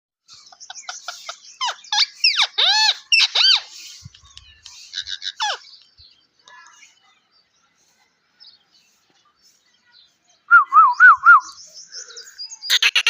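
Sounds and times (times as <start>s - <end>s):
parrot chirping and screeching: 0.7s - 4.0s, 4.7s - 5.7s, 12.7s - 13.0s.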